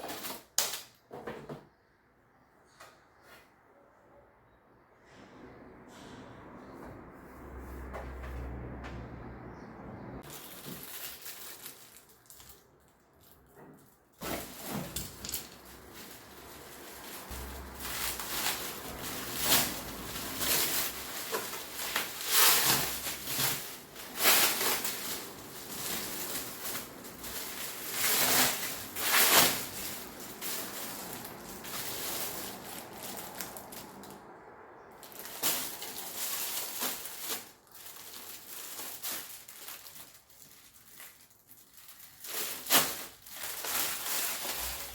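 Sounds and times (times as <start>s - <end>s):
packaging rustling and crinkling: 0.0s - 0.9s, 10.2s - 34.2s, 34.9s - 44.9s.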